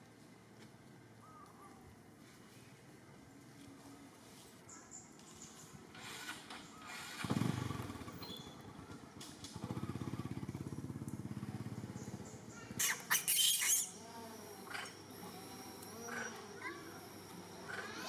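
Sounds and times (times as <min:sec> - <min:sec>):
small engine starting and running: 0:05.9 - 0:18.0.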